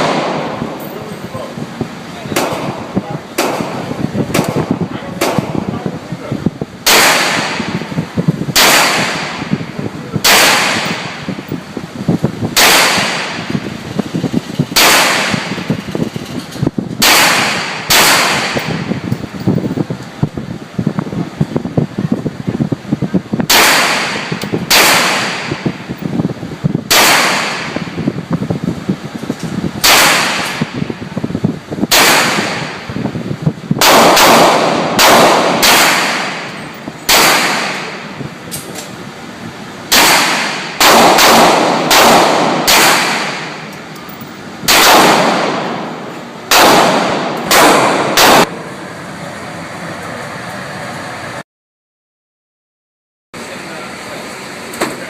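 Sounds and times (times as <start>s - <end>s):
gunshots: 0.0s - 0.8s, 2.3s - 5.9s, 6.8s - 11.4s, 12.5s - 13.8s, 14.7s - 15.8s, 17.0s - 19.1s, 23.5s - 25.9s, 26.9s - 28.1s, 29.8s - 31.0s, 31.8s - 33.0s, 33.8s - 38.2s, 39.9s - 43.7s, 44.6s - 48.6s.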